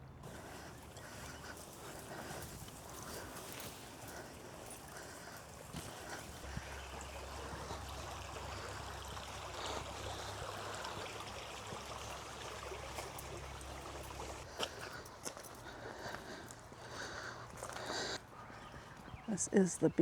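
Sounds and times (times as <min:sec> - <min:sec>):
creek rushing: 0:00.2 - 0:15.0.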